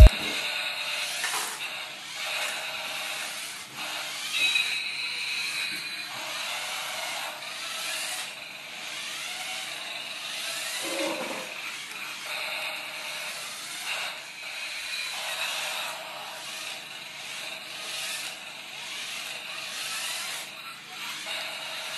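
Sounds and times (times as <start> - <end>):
toy gear motors whirring: 1.1 - 21.9.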